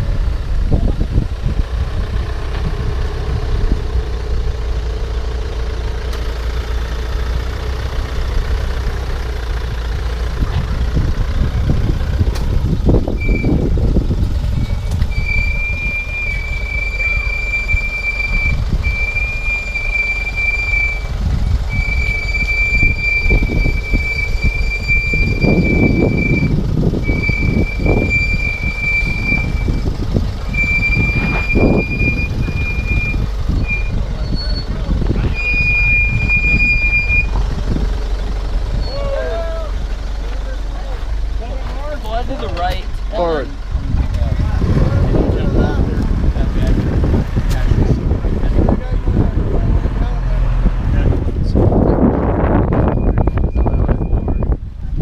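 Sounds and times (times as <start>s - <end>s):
vehicle engine rumbling: 0.0s - 55.0s
high steady squeal: 13.1s - 39.7s, 52.5s - 54.6s.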